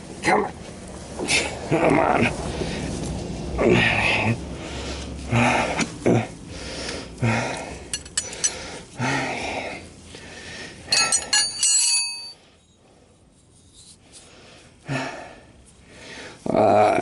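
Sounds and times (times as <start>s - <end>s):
metal tools clinking: 7.9s - 8.6s, 10.9s - 12.8s.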